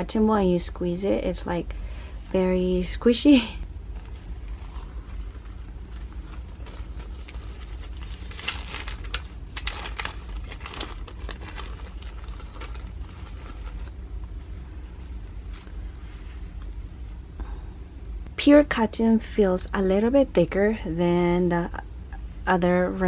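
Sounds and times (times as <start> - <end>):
low steady hum: 0.0 - 23.0
plastic wrapping crinkling: 3.3 - 17.0.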